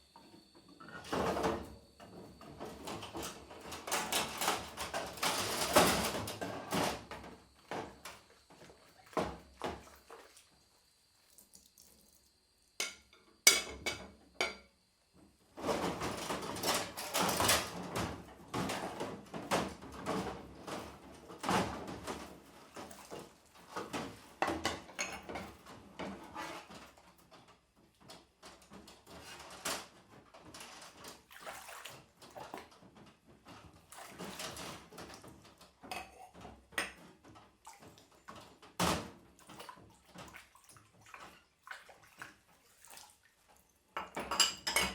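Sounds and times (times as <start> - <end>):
plates and utensils clinking: 44.0 - 44.9.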